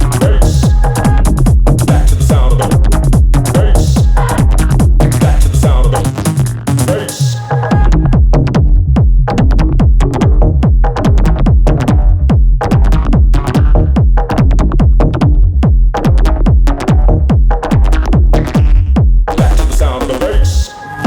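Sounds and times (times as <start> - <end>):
punchy pitch-dropping electronic hits: 0.0 - 19.9
heavy techno bass line: 0.0 - 21.0.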